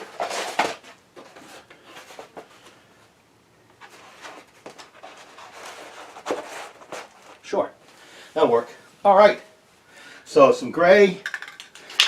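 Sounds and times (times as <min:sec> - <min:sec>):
faint rustling: 0:00.0 - 0:09.0
objects knocking: 0:11.2 - 0:12.0.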